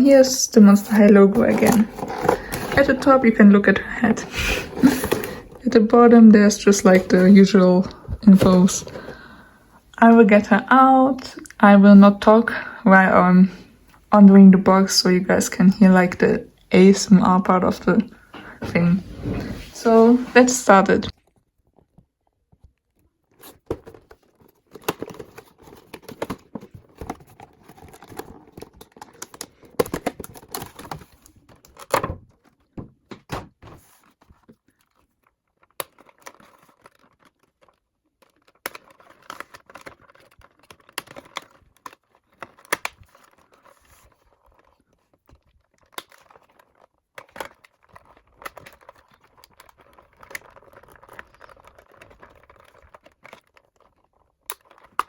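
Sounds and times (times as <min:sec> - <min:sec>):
hands tapping and scraping packaging: 0:00.8 - 0:05.7, 0:21.2 - 0:55.0
plastic crinkling: 0:00.8 - 0:09.5, 0:33.8 - 0:55.0.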